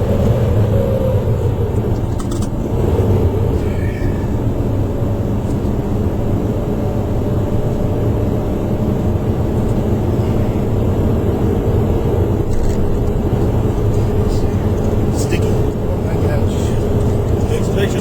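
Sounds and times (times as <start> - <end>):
car cabin road and engine rumble: 0.0 - 18.0.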